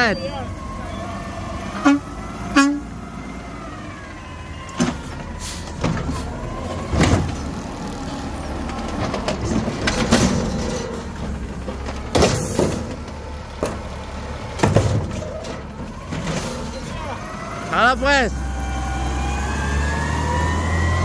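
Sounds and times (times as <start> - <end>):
garbage truck running: 0.0 - 21.0
sharp clanks and knocks: 8.7 - 16.7.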